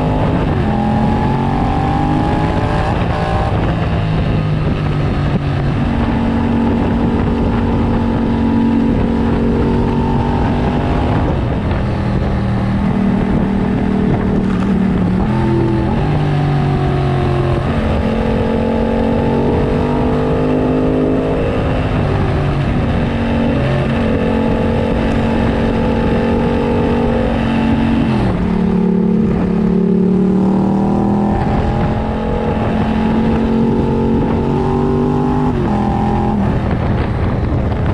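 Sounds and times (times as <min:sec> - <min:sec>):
motorcycle engine revving: 0:00.0 - 0:37.9.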